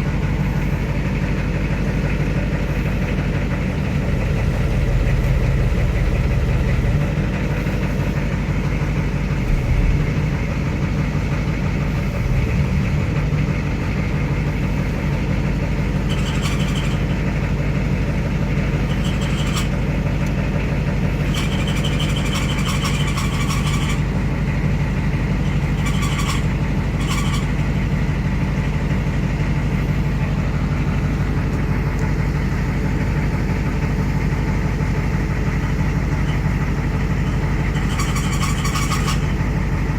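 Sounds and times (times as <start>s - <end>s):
diesel truck engine running: 0.0s - 39.9s
high-pitched transmission squeal: 16.1s - 17.2s, 18.8s - 19.8s, 21.2s - 24.1s, 25.4s - 27.7s, 37.2s - 39.4s.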